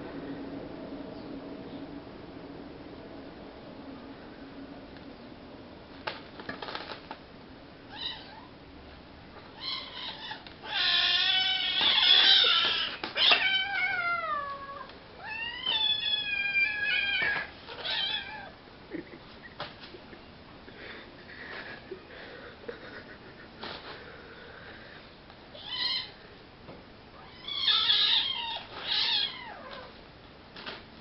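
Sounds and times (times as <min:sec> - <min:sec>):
cat yowling: 0:07.9 - 0:08.5, 0:09.5 - 0:18.6, 0:25.6 - 0:26.2, 0:27.2 - 0:29.9.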